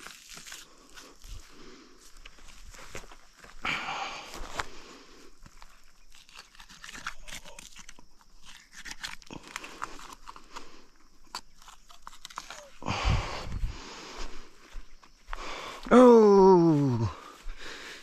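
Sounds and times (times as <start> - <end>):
knife cutting hide and meat: 6.0 - 10.4.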